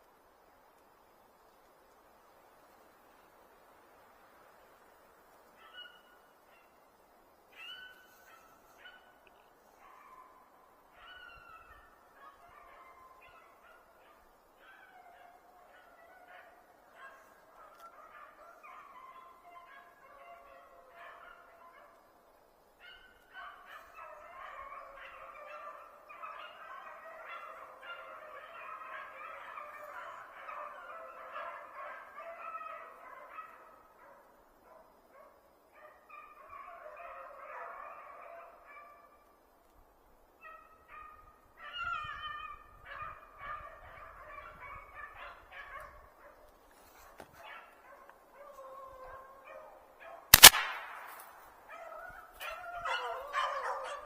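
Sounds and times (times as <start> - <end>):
hounds baying: 7.6 - 22.0, 22.8 - 34.2, 35.8 - 39.1, 40.4 - 50.3, 51.4 - 54.0.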